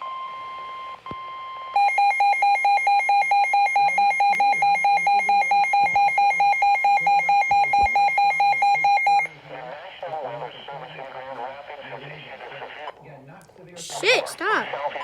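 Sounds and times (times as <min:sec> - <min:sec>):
electronic alarm beeping: 0:00.0 - 0:09.3.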